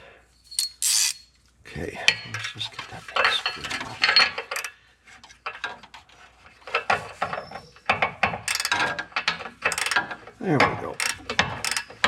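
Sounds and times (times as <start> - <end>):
hand ratchet clicking: 0.5 - 1.3, 4.1 - 4.8, 8.4 - 10.2, 10.9 - 12.0.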